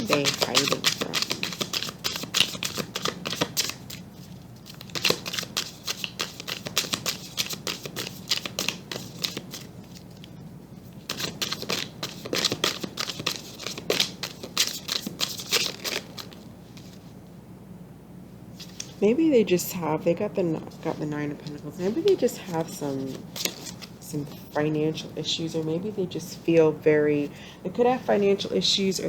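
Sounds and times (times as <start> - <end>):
cards being shuffled: 0.0 - 10.4, 11.0 - 17.0, 20.7 - 24.5.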